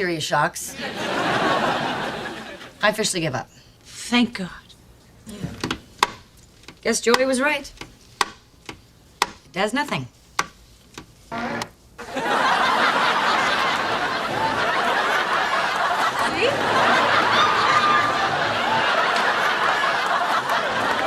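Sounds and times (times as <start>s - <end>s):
studio audience laughing: 0.7s - 2.8s, 12.0s - 21.0s.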